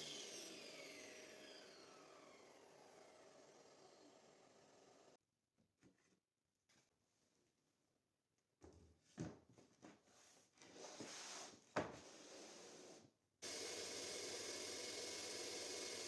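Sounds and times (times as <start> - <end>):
power saw motor whirring: 0.0 - 5.2, 13.4 - 16.0.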